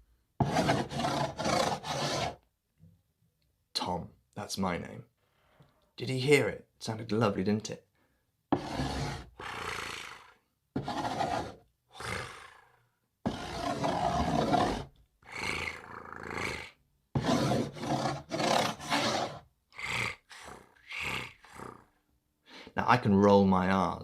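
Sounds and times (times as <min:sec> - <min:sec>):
metal spoon scraping cardboard: 0:00.4 - 0:02.4, 0:08.6 - 0:09.3, 0:10.8 - 0:11.6, 0:13.3 - 0:14.9, 0:17.2 - 0:19.4.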